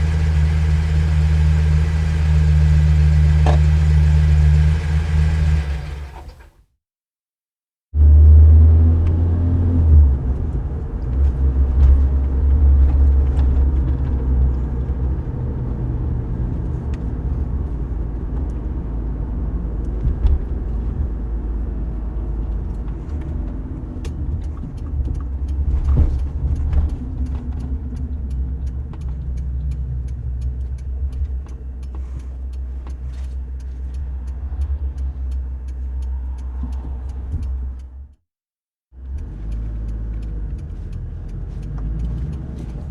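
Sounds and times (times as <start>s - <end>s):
car engine and road rumble: 0.0s - 6.6s, 8.0s - 38.2s, 38.9s - 42.9s.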